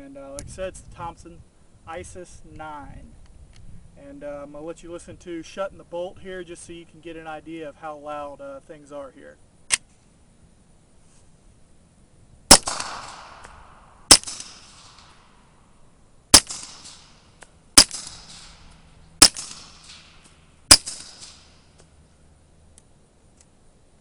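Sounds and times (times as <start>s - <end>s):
suppressed pistol shots: 12.5s - 15.3s, 16.3s - 21.7s.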